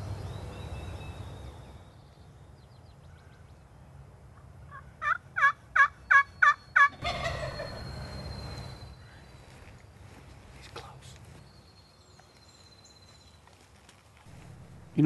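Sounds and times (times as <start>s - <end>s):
wild turkey yelping: 4.7s - 8.7s
rough turkey call: 4.7s - 8.8s.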